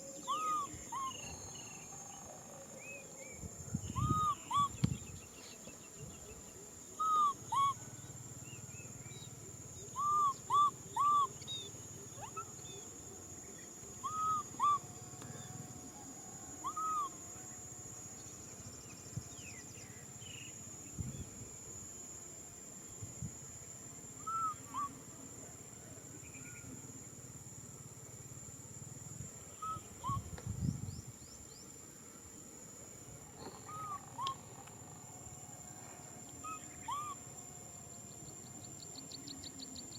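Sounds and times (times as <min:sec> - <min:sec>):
baby monkey coo calls: 0:00.2 - 0:02.2, 0:04.0 - 0:04.8, 0:07.0 - 0:07.8, 0:10.0 - 0:12.5, 0:14.0 - 0:14.9, 0:16.6 - 0:17.2, 0:33.5 - 0:34.6, 0:36.4 - 0:37.2.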